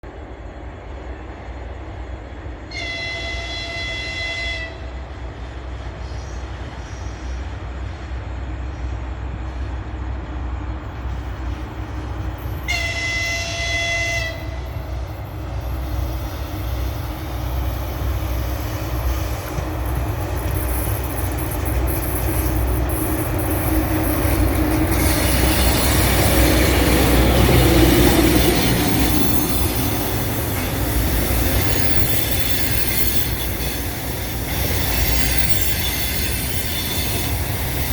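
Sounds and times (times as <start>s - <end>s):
locomotive horn blasts: 2.7s - 4.9s, 12.6s - 14.8s
train wheels squealing: 11.0s - 37.9s.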